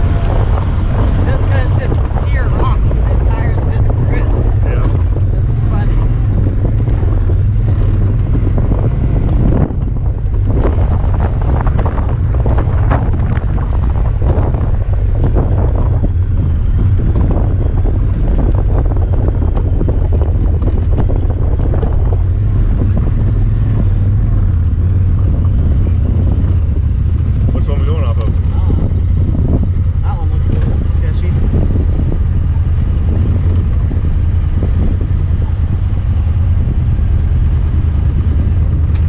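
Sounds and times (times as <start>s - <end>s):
side-by-side engine rumbling: 0.0s - 39.0s
wind buffeting microphone: 0.0s - 39.0s.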